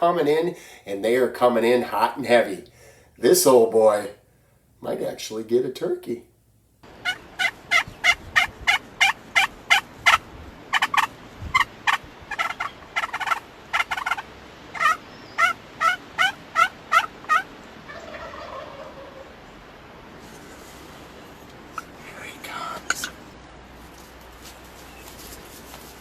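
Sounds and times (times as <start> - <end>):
turkey yelping: 7.0 - 19.5, 21.7 - 22.0.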